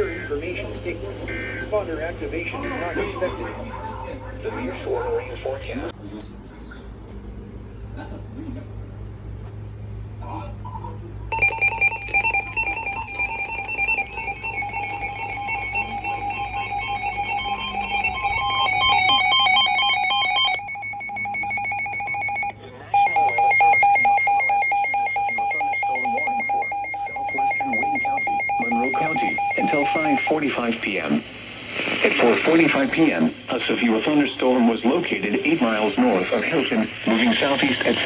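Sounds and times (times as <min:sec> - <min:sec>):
two-tone electronic alert signal: 0:11.3 - 0:30.3.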